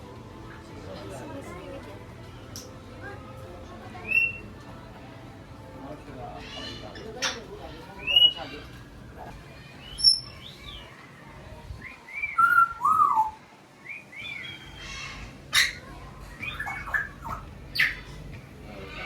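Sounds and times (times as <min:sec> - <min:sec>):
parrots whistling calls: 0:04.0 - 0:04.4, 0:12.1 - 0:18.1.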